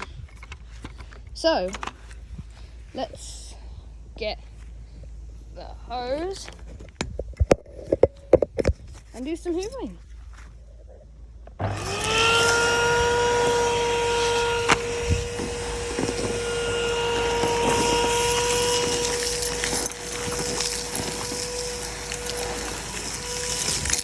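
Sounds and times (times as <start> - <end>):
vacuum hose knocking: 11.6 - 23.6
vacuum cleaner motor whine: 11.6 - 24.0.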